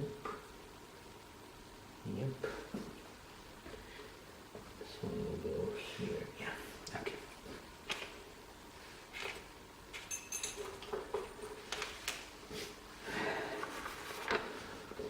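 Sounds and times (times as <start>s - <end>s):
metal parts clicking and tapping: 10.0s - 11.6s
metallic ring: 10.1s - 10.7s.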